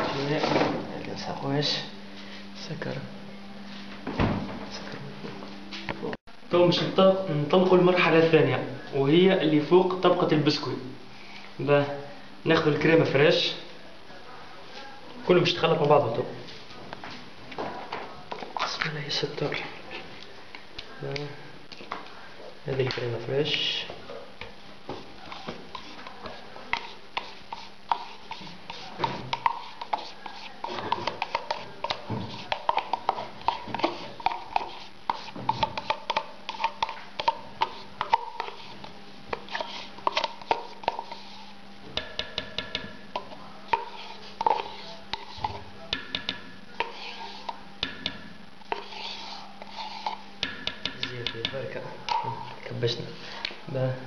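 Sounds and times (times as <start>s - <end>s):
steady low hum: 0.0s - 54.0s
utensil tapping against bowl: 25.4s - 38.7s, 39.3s - 41.3s, 41.9s - 52.3s.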